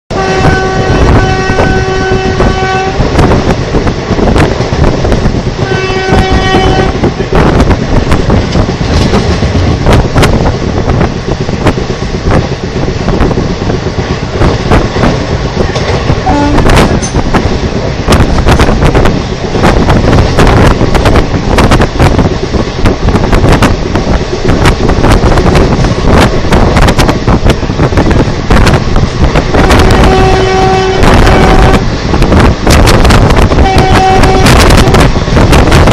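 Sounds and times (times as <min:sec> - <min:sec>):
locomotive horn blast: 0:00.1 - 0:03.1, 0:05.6 - 0:07.1, 0:16.2 - 0:16.8, 0:29.5 - 0:31.8, 0:33.5 - 0:34.9
train wheels clattering over rail joints: 0:06.2 - 0:30.1.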